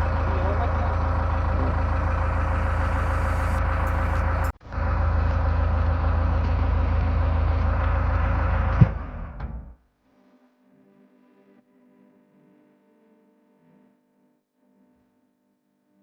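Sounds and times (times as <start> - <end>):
diesel engine running: 0.0 - 9.6
thump: 8.8 - 9.7.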